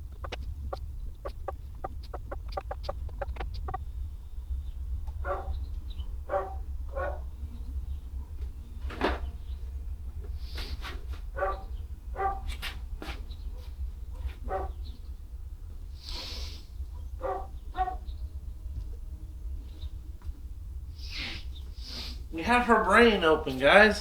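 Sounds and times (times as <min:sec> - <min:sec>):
dogs barking: 0:00.0 - 0:03.8, 0:05.1 - 0:09.2, 0:10.6 - 0:15.2, 0:16.8 - 0:18.2
sharp clicks: 0:00.0 - 0:03.8
low hum: 0:00.0 - 0:24.0.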